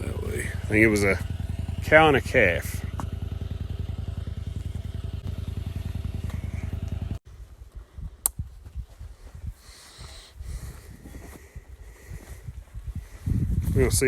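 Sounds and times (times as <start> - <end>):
engine idling: 0.0 - 7.2.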